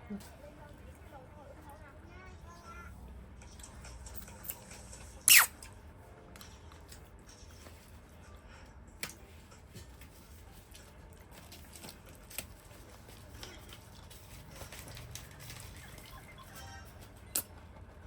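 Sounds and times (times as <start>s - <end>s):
quiet chewing: 6.4s - 16.2s.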